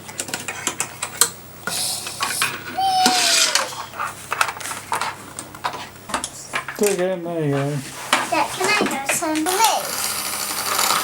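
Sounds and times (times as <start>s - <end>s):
brief hissing: 1.7s - 3.9s.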